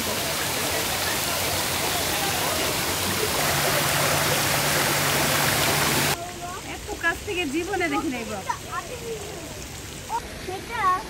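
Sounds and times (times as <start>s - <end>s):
faint voices: 0.0s - 6.9s
rushing water: 0.0s - 11.0s.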